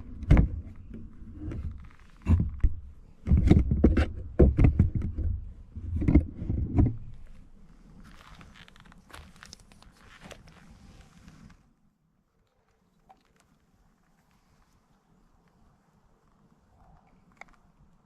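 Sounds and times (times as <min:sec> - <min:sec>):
wood crackling: 0:00.0 - 0:11.7.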